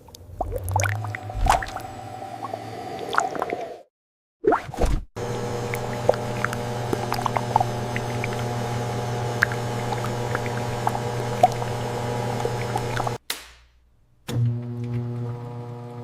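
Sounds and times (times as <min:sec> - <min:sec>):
machinery humming: 0:00.7 - 0:03.8, 0:05.2 - 0:13.2.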